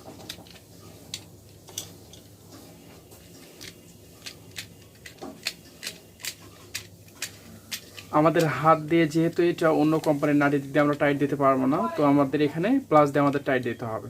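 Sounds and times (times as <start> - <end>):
plastic and metal parts clicking: 3.5 - 8.5.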